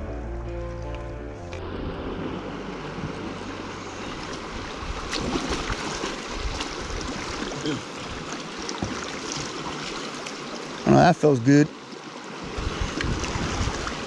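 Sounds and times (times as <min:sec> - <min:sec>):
river water flowing and splashing: 0:00.7 - 0:14.0
sharp splashes: 0:01.5 - 0:10.9.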